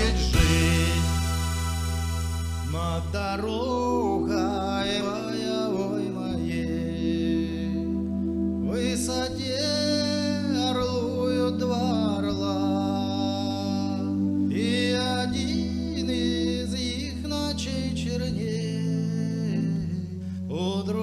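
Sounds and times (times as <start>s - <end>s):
person singing long notes: 0.0s - 1.5s
sustained accompaniment chords: 0.0s - 20.8s.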